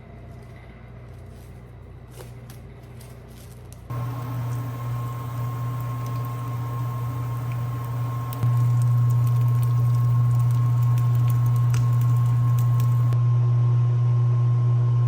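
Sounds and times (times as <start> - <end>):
faint high whine: 3.9 - 13.5
kitchen appliance humming: 3.9 - 15.0.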